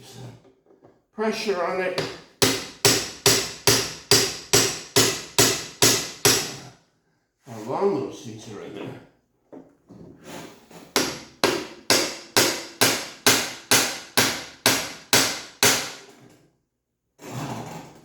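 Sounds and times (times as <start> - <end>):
hammer strikes: 2.0 - 6.6, 11.0 - 16.1.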